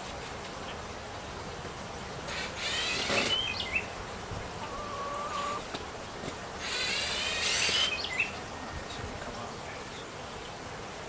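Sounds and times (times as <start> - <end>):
power drill buzzing: 2.3 - 3.4, 6.6 - 7.9.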